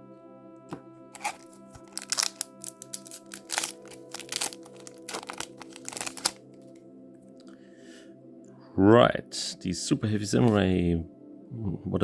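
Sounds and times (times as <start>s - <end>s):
background music: 0.0s - 12.0s
foil wrapper crinkling and tearing: 1.2s - 6.5s.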